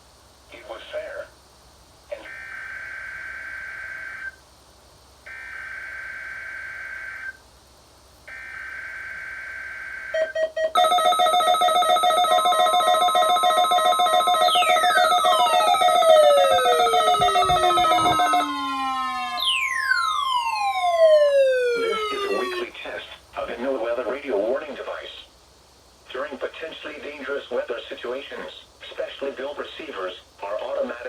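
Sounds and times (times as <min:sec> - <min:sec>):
screechy digital data bursts: 0:10.8 - 0:18.6
buzzy multi-pitch alert tone: 0:10.8 - 0:22.7
tones sliding down in pitch: 0:10.8 - 0:22.7.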